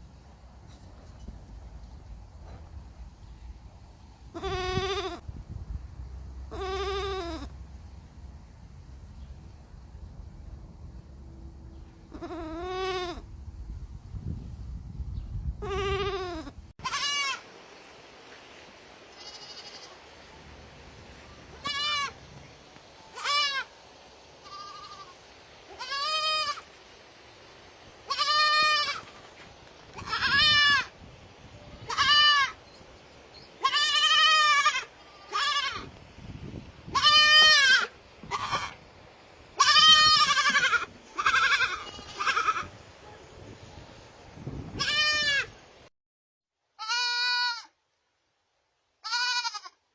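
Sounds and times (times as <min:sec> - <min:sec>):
baby goats bleating: 0:04.3 - 0:05.2, 0:06.5 - 0:07.6, 0:12.1 - 0:13.3, 0:15.6 - 0:17.4, 0:19.1 - 0:20.0, 0:21.5 - 0:22.2, 0:23.1 - 0:23.7, 0:24.4 - 0:26.7, 0:28.1 - 0:29.2, 0:30.0 - 0:30.9, 0:31.9 - 0:32.6, 0:33.6 - 0:35.9, 0:36.9 - 0:38.8, 0:39.6 - 0:42.7, 0:44.8 - 0:45.6, 0:46.8 - 0:47.8, 0:49.0 - 0:49.8.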